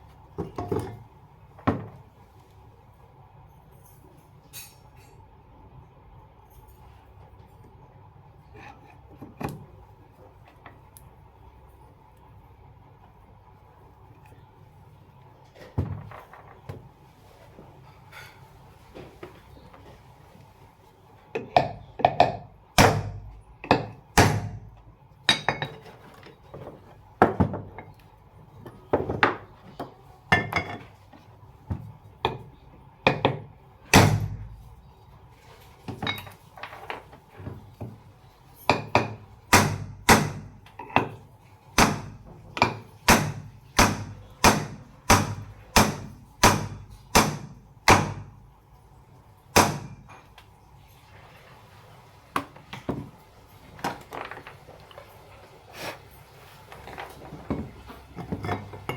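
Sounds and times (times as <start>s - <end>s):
hammer striking metal: 33.9s - 34.5s, 38.8s - 40.5s, 41.8s - 48.3s, 49.6s - 50.2s.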